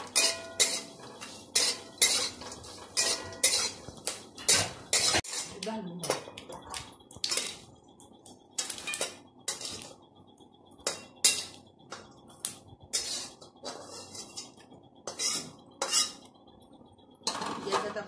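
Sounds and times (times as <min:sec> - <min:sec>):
metal spatula scraping metal pan: 0:00.0 - 0:05.7, 0:08.6 - 0:10.0, 0:10.9 - 0:11.6, 0:12.9 - 0:16.3
spices roasting in oil: 0:00.0 - 0:18.0.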